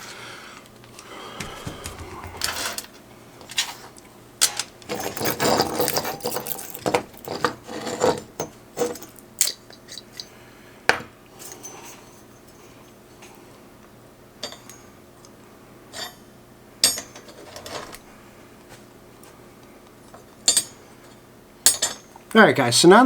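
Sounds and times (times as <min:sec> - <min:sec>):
sharp knocks: 0:01.4 - 0:02.8
metal parts and tools clinking: 0:04.9 - 0:07.5.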